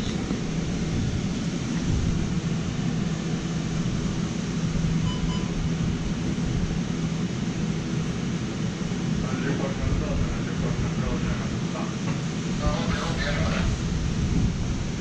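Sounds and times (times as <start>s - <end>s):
machinery hum: 0.0s - 15.0s
faint short beeps: 5.0s - 5.6s.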